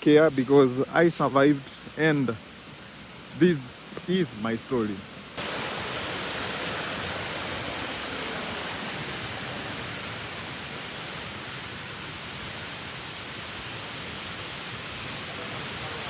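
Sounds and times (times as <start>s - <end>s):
waterfall roaring: 0.0s - 16.0s.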